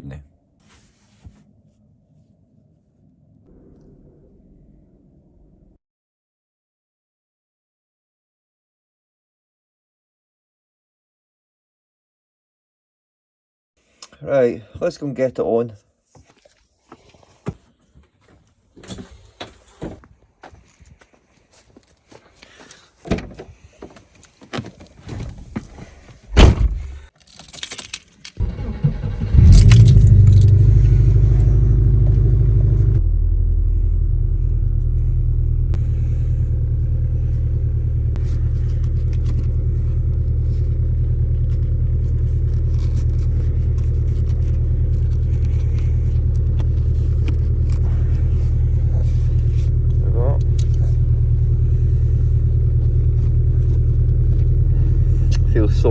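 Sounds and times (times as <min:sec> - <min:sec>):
keys jangling: 0:27.1 - 0:28.4, 0:29.4 - 0:30.8
car engine starting and idling: 0:28.4 - 0:55.9.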